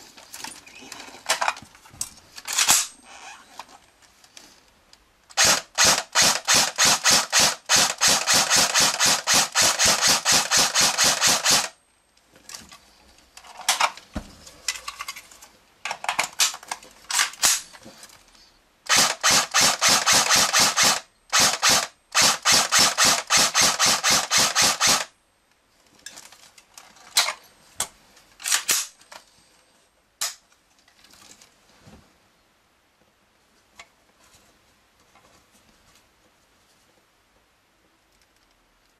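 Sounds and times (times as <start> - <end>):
airsoft rifle rapid fire: 5.4 - 11.8, 18.9 - 25.1.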